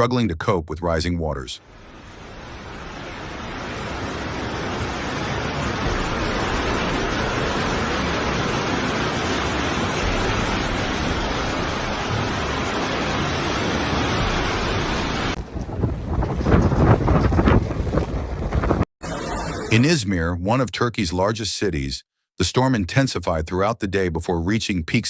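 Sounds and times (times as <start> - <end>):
heavy water rushing: 0.0 - 17.6.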